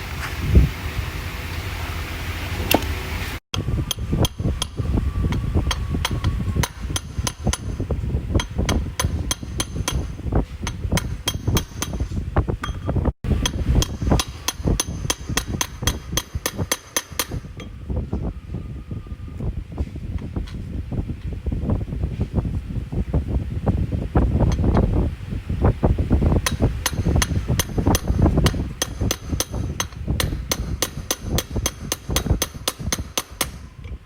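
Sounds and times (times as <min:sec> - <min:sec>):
hammer tapping on metal: 0:03.9 - 0:07.8, 0:08.4 - 0:17.7, 0:26.4 - 0:33.6.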